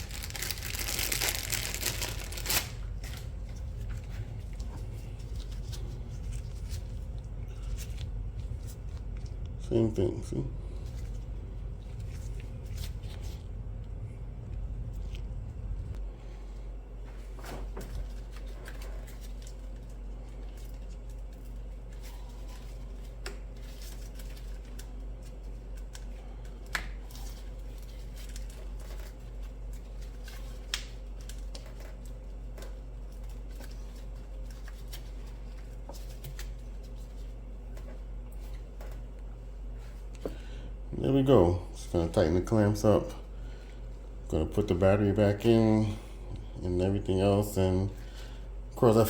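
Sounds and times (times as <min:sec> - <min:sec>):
low hum: 0:00.0 - 0:30.4.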